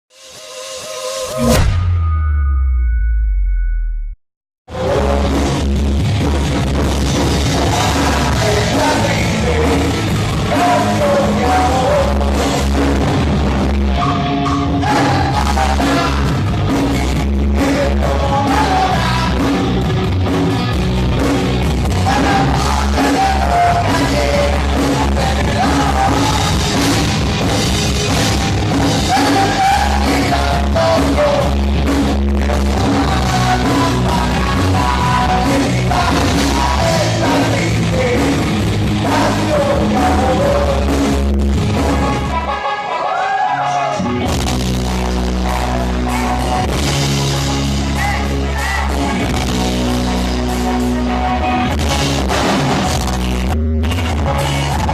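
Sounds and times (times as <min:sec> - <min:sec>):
drums: 0:00.1 - 0:02.3, 0:04.7 - 0:54.9
heavy bass: 0:00.2 - 0:42.6, 0:43.9 - 0:54.9
rock band playing live: 0:04.7 - 0:54.9
person singing: 0:07.6 - 0:12.6, 0:14.8 - 0:16.5, 0:17.5 - 0:19.8, 0:22.0 - 0:27.0, 0:29.0 - 0:31.8, 0:32.4 - 0:41.2.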